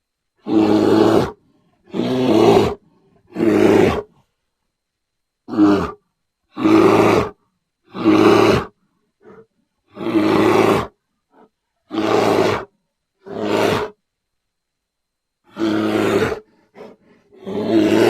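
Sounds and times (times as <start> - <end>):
bear roaring: 0.4 - 4.2, 5.5 - 14.0, 15.5 - 18.0.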